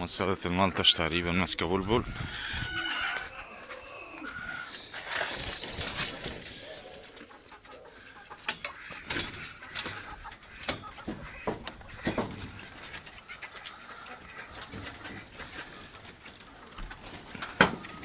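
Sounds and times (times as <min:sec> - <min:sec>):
birds calling: 0:00.0 - 0:18.0
rustling: 0:02.4 - 0:07.8.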